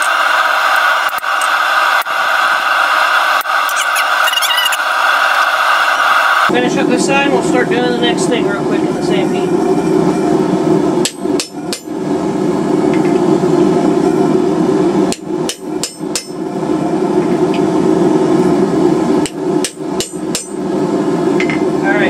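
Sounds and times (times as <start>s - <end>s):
hammer striking steel anvil: 19.6s - 20.6s.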